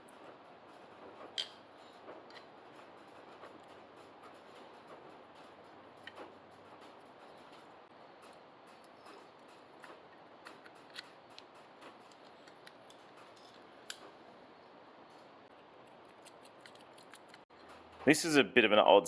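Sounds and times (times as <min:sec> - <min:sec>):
small clicks and ticks: 0:15.1 - 0:17.8.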